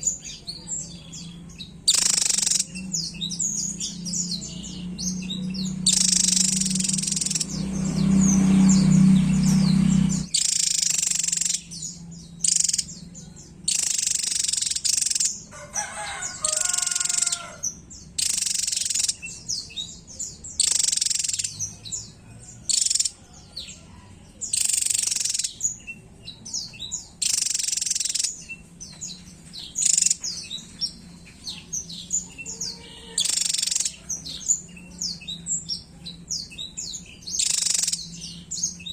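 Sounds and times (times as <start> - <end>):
bird singing high-pitched song: 0.0 - 15.5, 16.1 - 38.9
short high bird chirps: 1.9 - 2.8, 5.8 - 7.6, 8.6 - 11.7
low hum: 2.4 - 10.4.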